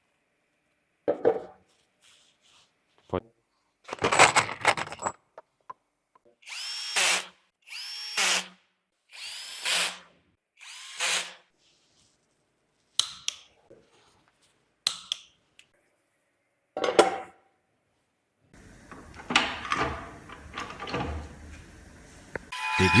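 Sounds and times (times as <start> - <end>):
power drill whining: 6.4 - 8.5, 9.1 - 10.0, 10.6 - 11.4.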